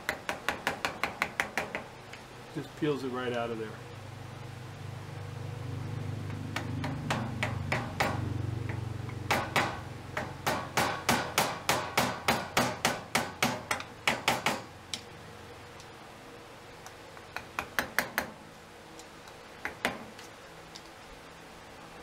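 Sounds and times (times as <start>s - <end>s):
hammer tapping wood chisel: 0.0s - 1.8s, 6.6s - 14.6s
low hum: 3.7s - 10.6s.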